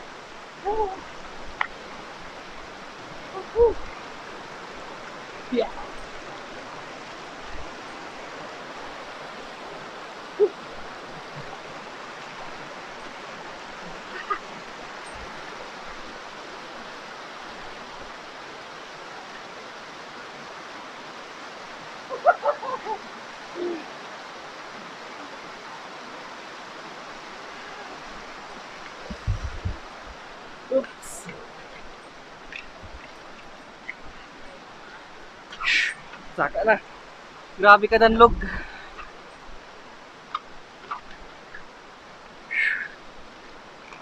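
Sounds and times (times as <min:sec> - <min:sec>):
river water rushing: 0:00.0 - 0:44.0
short pitched calls: 0:35.5 - 0:36.2, 0:42.5 - 0:43.0.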